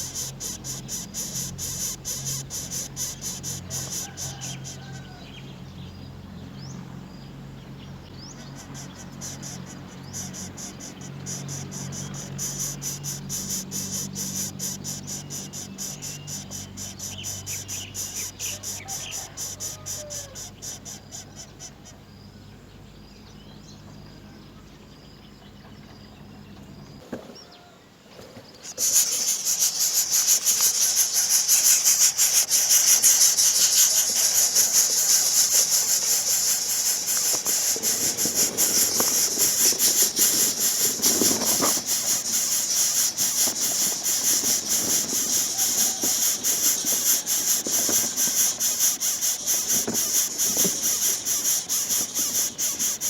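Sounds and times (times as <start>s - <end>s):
loud high-pitched hiss: 0.0s - 5.1s, 28.6s - 53.0s
insects trilling: 0.0s - 53.0s.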